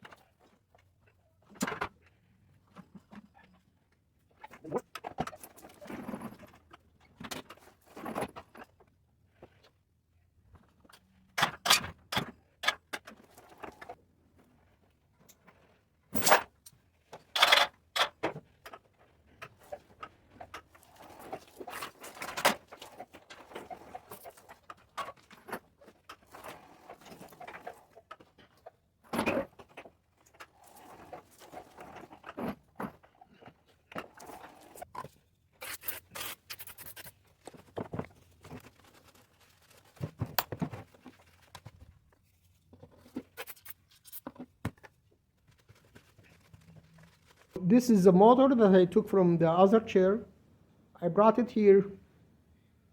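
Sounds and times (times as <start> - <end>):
rustling: 34.0 - 47.6.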